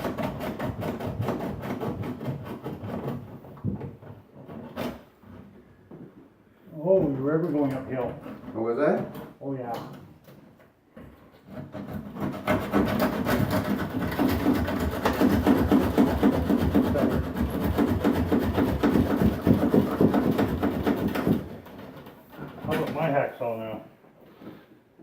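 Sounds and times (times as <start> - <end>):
hand saw rasping: 0.0 - 3.2, 11.4 - 21.5.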